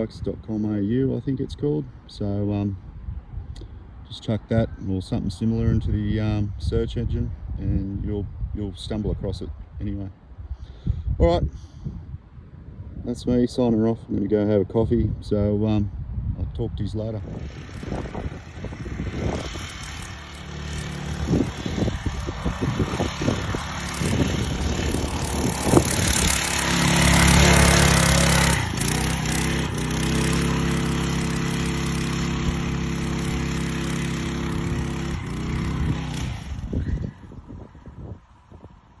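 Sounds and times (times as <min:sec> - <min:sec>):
small engine running: 0:17.2 - 0:37.5.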